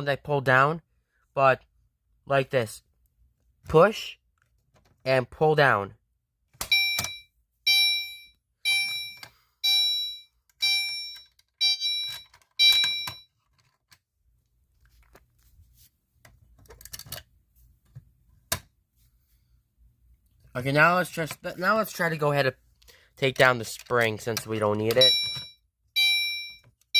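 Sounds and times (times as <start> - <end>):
fire alarm chime ringing: 6.7 - 13.3, 25.0 - 26.7.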